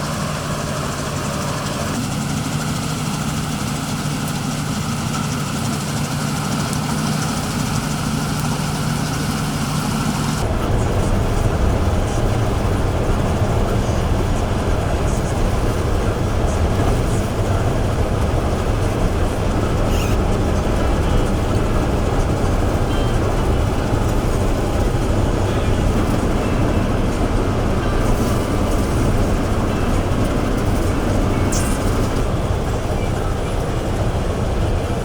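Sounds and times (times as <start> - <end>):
combine harvester droning: 0.0 - 35.0.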